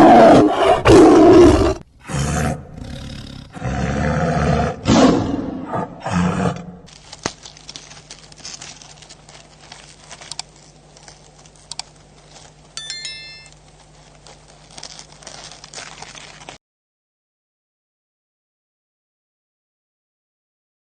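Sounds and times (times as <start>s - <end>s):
big cat roaring: 0.0s - 6.9s
steady low hum: 1.7s - 16.6s
faint crackling with clicks: 6.9s - 16.6s.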